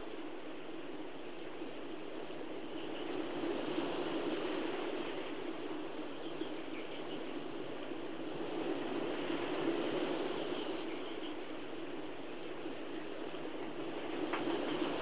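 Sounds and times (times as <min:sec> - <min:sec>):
steady rushing noise: 0:00.0 - 0:15.0.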